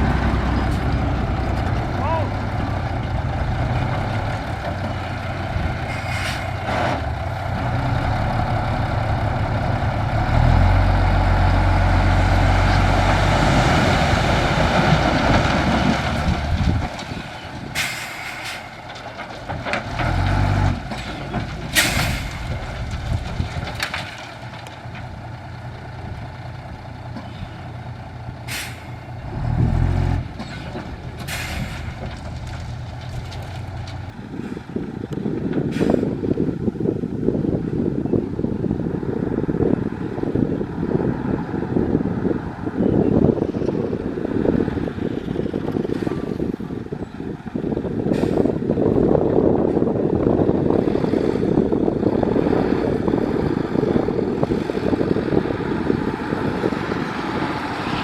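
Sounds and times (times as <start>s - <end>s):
truck diesel engine under load: 0.0s - 58.0s
air brake hisses: 28.5s - 28.9s.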